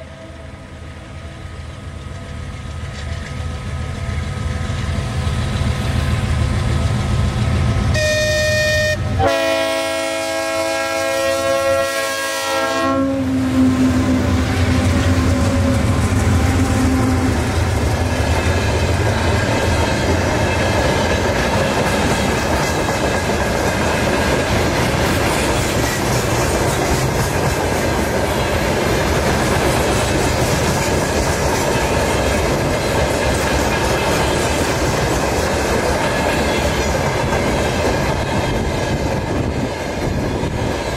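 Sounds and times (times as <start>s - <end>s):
train rumbling past: 0.0s - 40.9s
train horn blasts: 7.8s - 17.5s.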